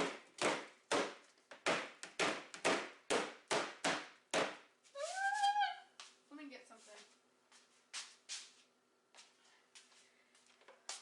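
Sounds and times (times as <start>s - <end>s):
woman saying ooh: 5.0s - 5.9s.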